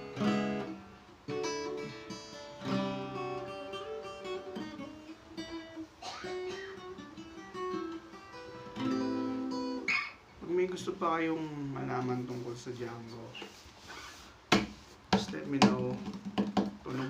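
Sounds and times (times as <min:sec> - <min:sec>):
acoustic guitar playing: 0:00.0 - 0:13.6.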